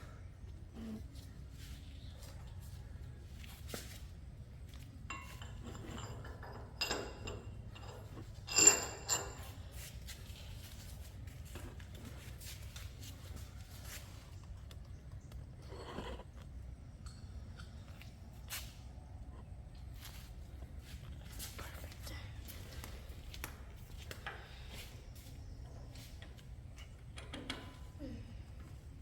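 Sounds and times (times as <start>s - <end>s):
metal parts and tools clinking: 5.0s - 11.4s.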